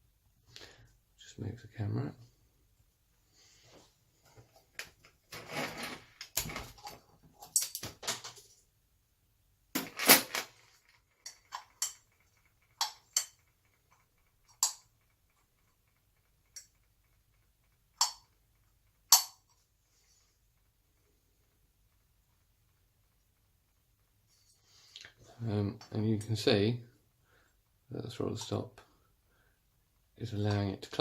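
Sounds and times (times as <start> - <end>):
metal parts rattling: 9.8 - 13.5
sharp metal clicks: 10.5 - 19.6.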